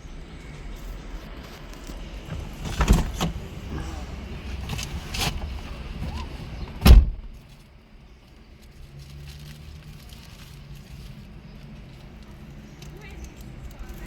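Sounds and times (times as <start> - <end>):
vehicle engine rumble: 0.0 - 14.0
loud thump: 5.3 - 7.4.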